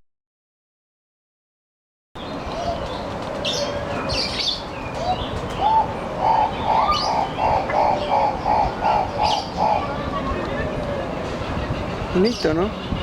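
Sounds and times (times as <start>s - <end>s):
low cooing bird notes: 2.4s - 13.0s
high bird chirps: 3.5s - 10.3s.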